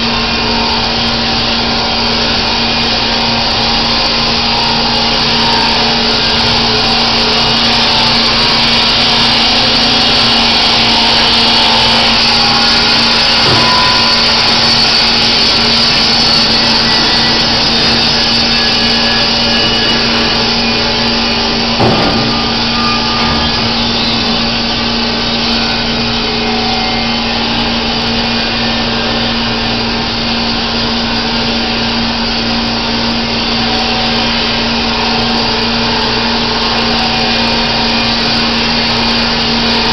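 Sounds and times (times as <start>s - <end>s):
band sawmill running: 0.0s - 39.9s.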